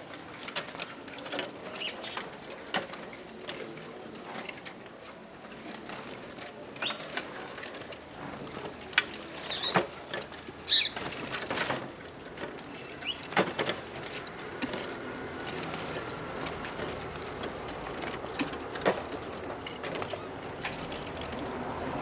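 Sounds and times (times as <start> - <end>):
birds chirping: 1.7 - 2.3, 6.8 - 7.1, 9.4 - 9.8, 10.6 - 11.2, 12.7 - 13.4.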